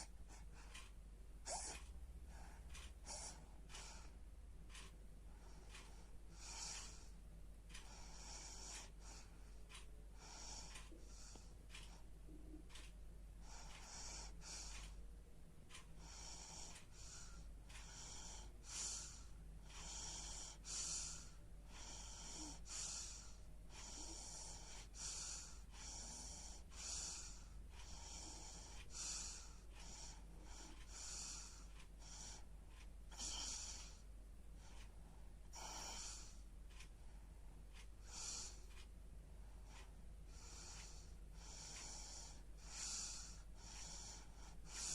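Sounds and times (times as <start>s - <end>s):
baby snoring softly: 1.4s - 3.6s, 33.1s - 34.0s, 35.5s - 36.4s, 40.4s - 44.9s.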